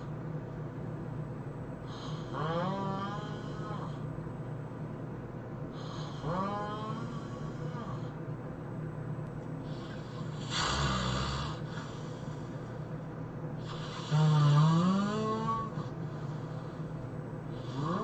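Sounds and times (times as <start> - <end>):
person snoring loudly: 1.9 - 4.0, 5.8 - 8.2, 9.7 - 12.0, 13.6 - 16.8, 17.5 - 18.0.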